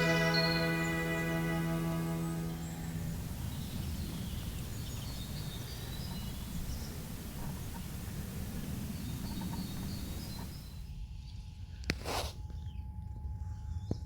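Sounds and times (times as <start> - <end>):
small birds chirping: 0.0 - 10.9
steady hiss: 0.0 - 11.0
low rumble: 0.6 - 5.7.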